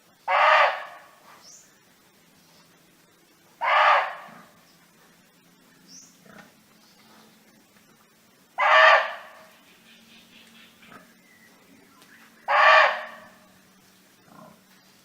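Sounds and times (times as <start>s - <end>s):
deer barking: 0.3s - 1.1s, 3.6s - 4.5s, 8.6s - 9.4s, 12.5s - 13.4s.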